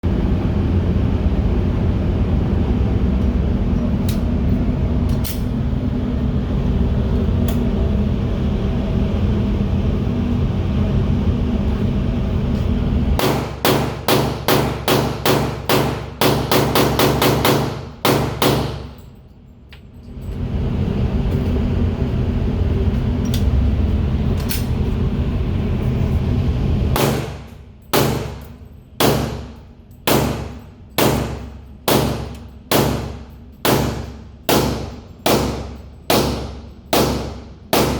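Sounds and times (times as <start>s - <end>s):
low rumble: 0.0s - 13.5s, 18.7s - 37.7s
pistol shots: 13.2s - 19.0s, 27.0s - 28.4s, 29.0s - 37.9s.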